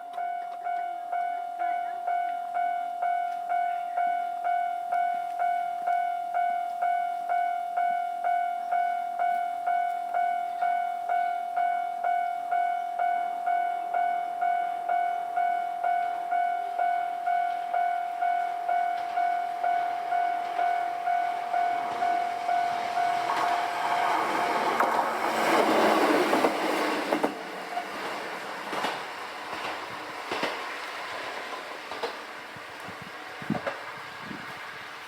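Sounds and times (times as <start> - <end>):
level crossing bell ringing: 0.0 - 24.8.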